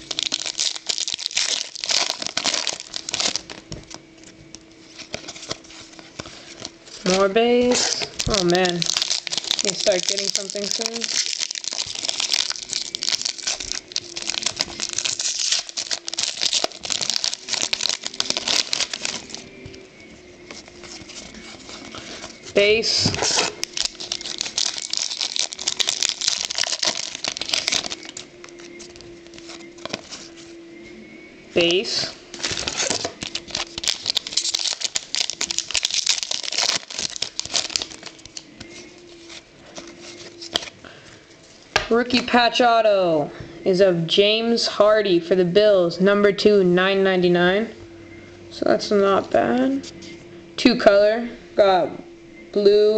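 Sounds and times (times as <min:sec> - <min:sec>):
cards rustling and clicking: 0:00.0 - 0:30.5, 0:31.6 - 0:40.8
wrapper crinkling: 0:00.0 - 0:30.6, 0:32.3 - 0:41.7.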